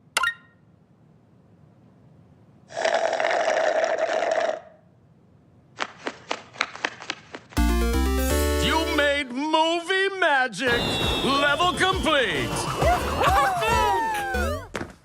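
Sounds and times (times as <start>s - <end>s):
gloves flapping together: 5.7s - 7.6s.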